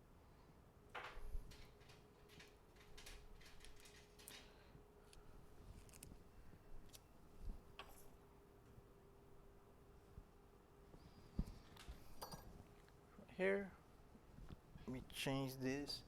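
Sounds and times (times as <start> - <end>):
faint steady hum: 0.0 - 16.0
small tools clicking and tapping: 1.0 - 5.2.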